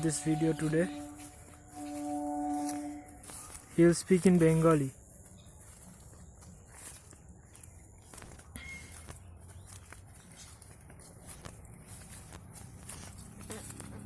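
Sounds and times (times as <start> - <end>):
short high note: 0.0 - 3.5
faint footsteps outdoors: 0.0 - 14.0
quiet natural ambience: 0.0 - 14.0.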